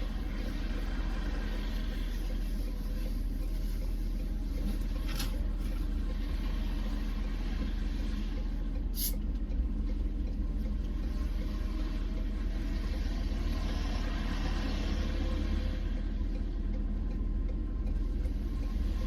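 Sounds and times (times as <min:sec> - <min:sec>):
engine and road rumble: 0:00.0 - 0:19.0
faint ticks: 0:07.2 - 0:13.9, 0:14.6 - 0:19.0.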